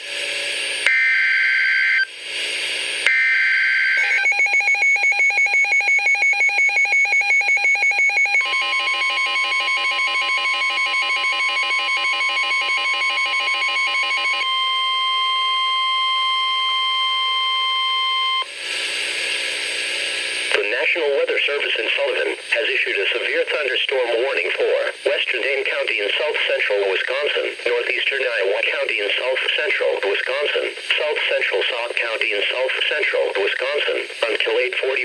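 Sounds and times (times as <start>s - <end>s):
rapidly pulsing alarm tone: 3.1s - 18.4s
steady warning alarm tone: 3.1s - 18.5s.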